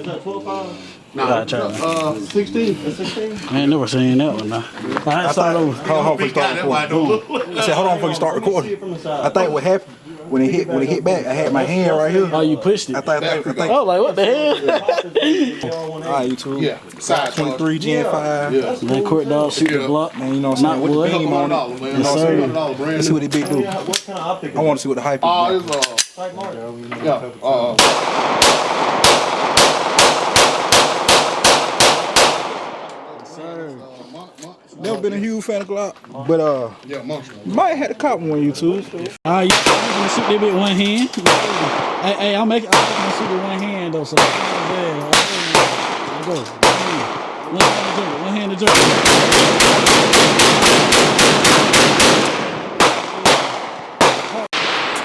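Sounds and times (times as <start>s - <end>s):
gunshots: 27.8s - 33.2s, 39.3s - 55.0s
pistol shots with reverberation: 27.8s - 33.2s, 39.5s - 55.0s.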